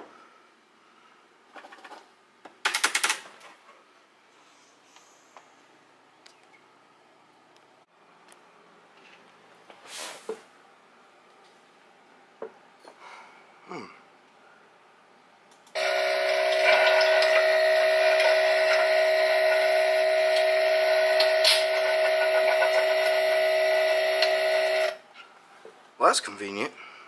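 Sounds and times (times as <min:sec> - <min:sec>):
machine whirring: 0:15.7 - 0:25.0.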